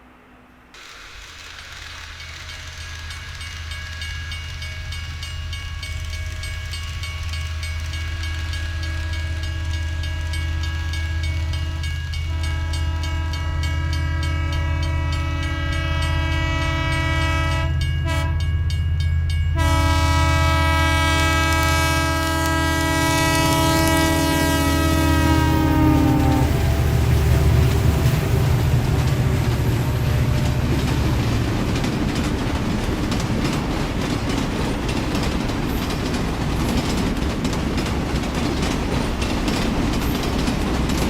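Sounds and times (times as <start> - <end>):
train rumbling: 0.0 - 41.0
train horn tones: 8.7 - 18.6, 19.5 - 31.9.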